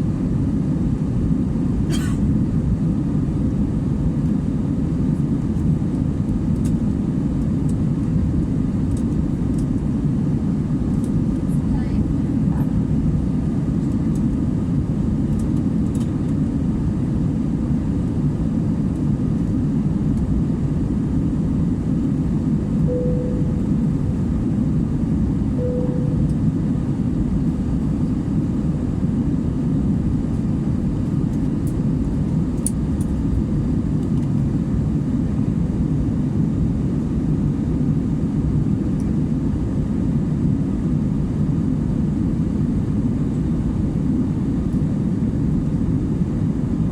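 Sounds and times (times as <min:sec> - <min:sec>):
airliner cabin rumble: 0:01.0 - 0:35.4
faint short tones: 0:22.9 - 0:24.0, 0:25.6 - 0:26.5.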